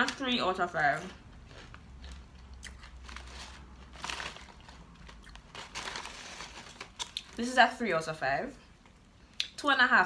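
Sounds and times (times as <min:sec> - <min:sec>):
chewing crunchy chips: 0:01.2 - 0:07.4.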